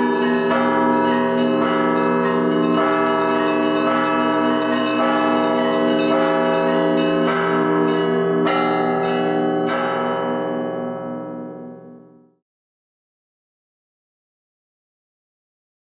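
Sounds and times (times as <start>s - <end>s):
pulsing hum of large bells: 0.0s - 12.2s
small church bells struck: 0.0s - 12.4s.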